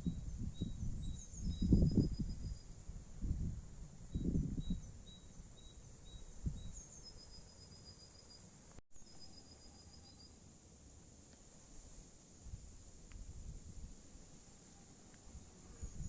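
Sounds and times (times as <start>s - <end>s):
small birds calling and trilling: 0.0s - 2.6s, 4.2s - 10.4s
faint background hiss: 0.0s - 16.0s.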